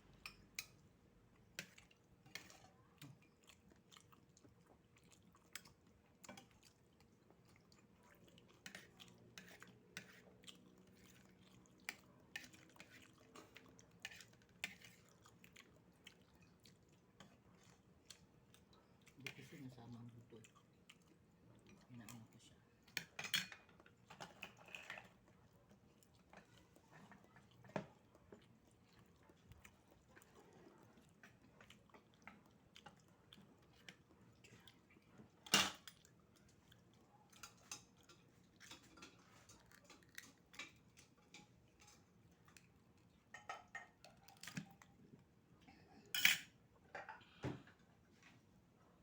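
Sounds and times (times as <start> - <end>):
faint chewing: 0.2 - 46.2
cutlery clinking on a plate: 23.0 - 25.1, 35.5 - 35.9, 43.3 - 44.6, 46.1 - 47.2.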